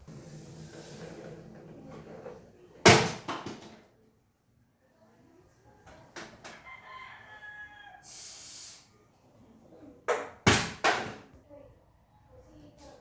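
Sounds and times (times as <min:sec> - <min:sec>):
hiss: 0:08.0 - 0:08.9.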